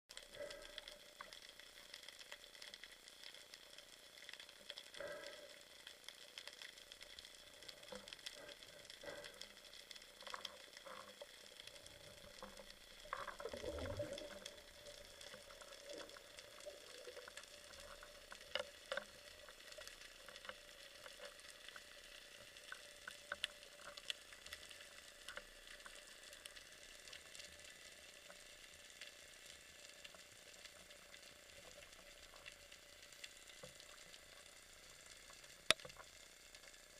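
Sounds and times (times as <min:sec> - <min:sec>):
sharp underwater clicks: 0:00.1 - 0:27.3, 0:35.2 - 0:36.8
underwater crackle: 0:00.1 - 0:36.9.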